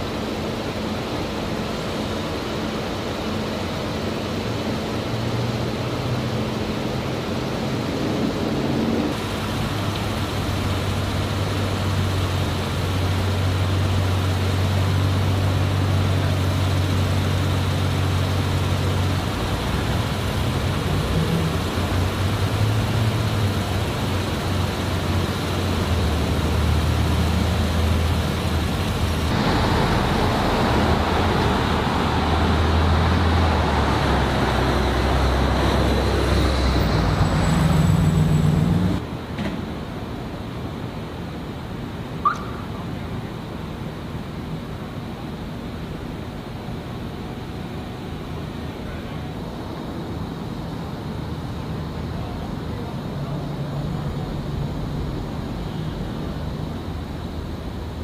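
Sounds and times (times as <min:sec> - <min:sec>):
loud hiss of noise: 0:00.0 - 0:58.0
traffic noise: 0:00.0 - 0:58.0
vehicle engines idling: 0:09.2 - 0:39.0.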